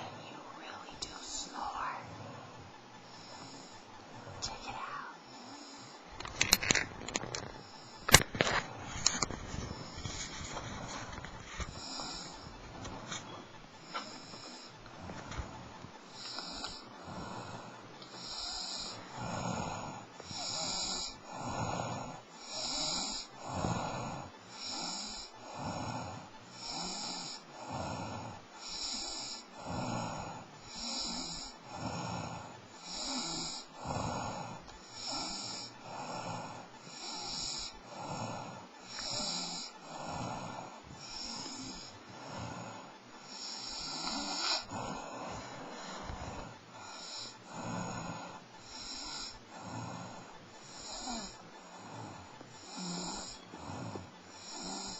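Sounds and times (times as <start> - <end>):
person snoring: 3.1 - 54.9.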